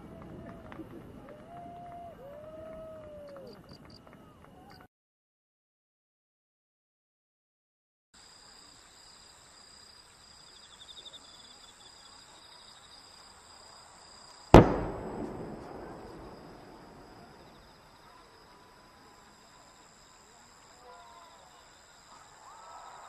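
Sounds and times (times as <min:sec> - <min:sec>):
firework bang with echoing rumble: 0:14.6 - 0:17.7.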